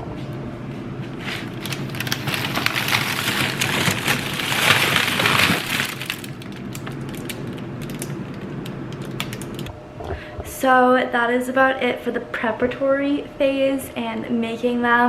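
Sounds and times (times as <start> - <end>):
crinkly rustling: 1.1 - 10.6.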